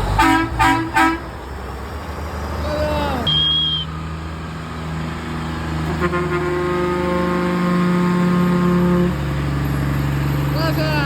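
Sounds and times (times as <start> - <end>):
truck engine hum: 0.0 - 11.0
truck horn blast: 0.1 - 1.3, 5.8 - 9.4.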